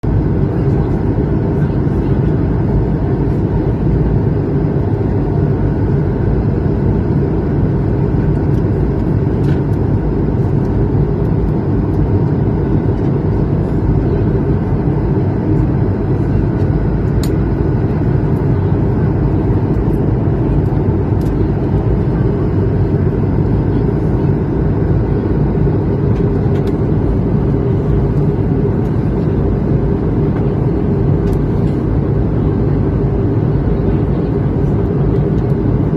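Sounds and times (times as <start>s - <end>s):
aircraft cabin drone: 0.0s - 35.9s.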